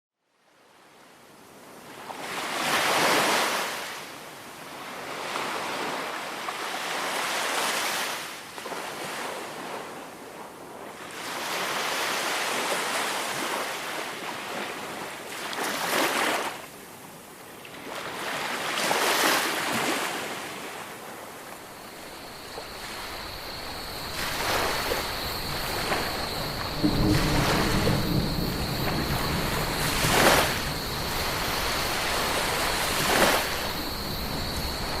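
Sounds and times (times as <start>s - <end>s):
ocean waves breaking: 17.7s - 35.0s
low hum: 21.6s - 35.0s
thin steady high tone: 21.6s - 35.0s.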